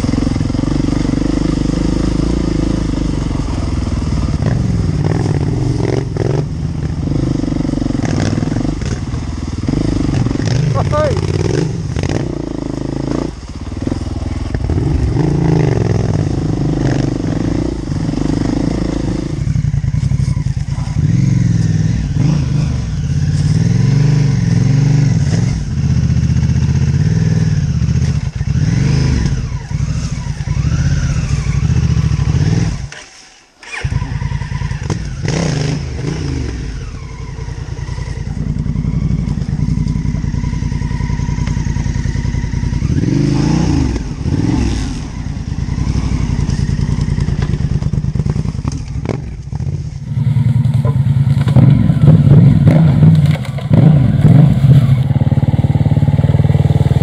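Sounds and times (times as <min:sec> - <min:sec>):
motorcycle engine revving: 0:00.0 - 0:57.0.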